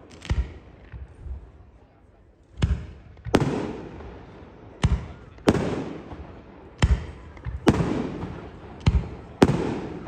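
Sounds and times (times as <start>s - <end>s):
fireworks bangs with rumble: 2.6s - 10.0s.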